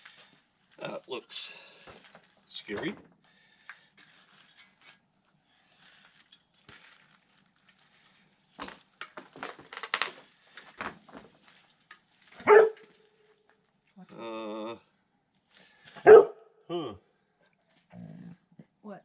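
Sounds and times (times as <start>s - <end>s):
clicks creaks and knocks: 8.6s - 12.0s.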